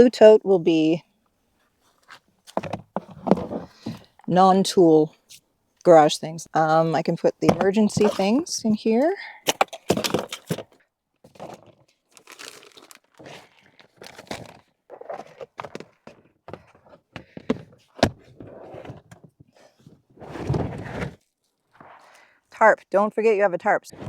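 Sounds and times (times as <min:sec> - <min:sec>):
gear rustling and crinkling: 0:01.5 - 0:04.3, 0:06.7 - 0:22.4.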